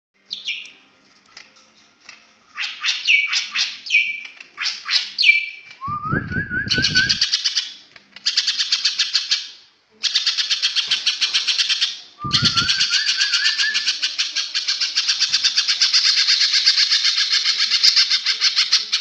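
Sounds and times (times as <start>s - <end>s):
songbird chirping and trilling: 0.2s - 19.0s
low rumble: 5.9s - 7.1s.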